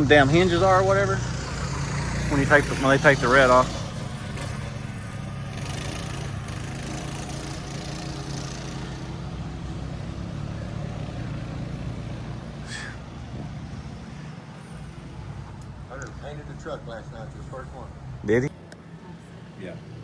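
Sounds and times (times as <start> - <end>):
vehicle engine humming: 0.0 - 20.0.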